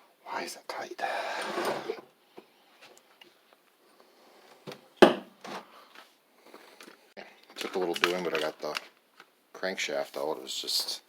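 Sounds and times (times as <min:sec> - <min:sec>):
metal scraping and rubbing: 0:01.2 - 0:02.1.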